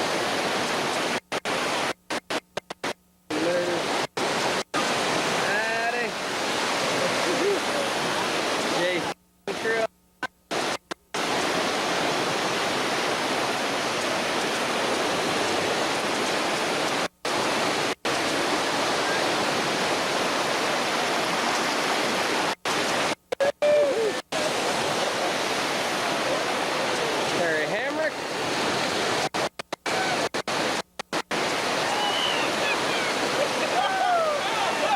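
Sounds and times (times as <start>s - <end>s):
whitewater rushing through rapid: 0.0s - 9.9s, 10.5s - 34.9s.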